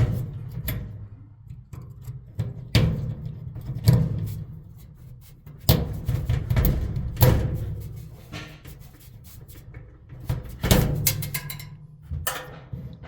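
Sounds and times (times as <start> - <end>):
metal parts knocking and clunking: 5.6 - 13.0.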